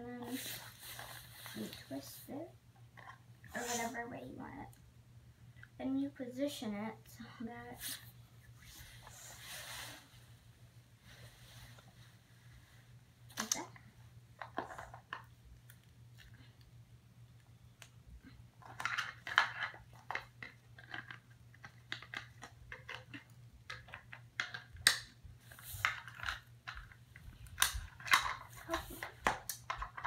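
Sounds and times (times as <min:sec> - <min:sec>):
plastic toys clicking and rustling: 0:18.6 - 0:30.0.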